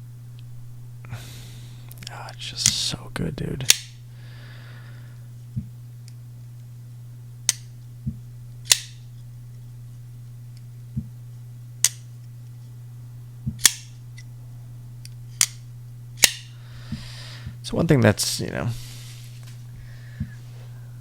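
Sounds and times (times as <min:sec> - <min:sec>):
steady low hum: 0:00.0 - 0:21.0
pocket knife clicking: 0:16.2 - 0:16.5.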